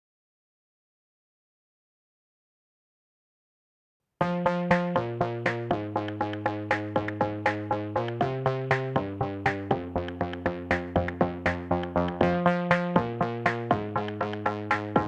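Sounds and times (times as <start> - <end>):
electronic synthesizer music: 4.2 - 15.0.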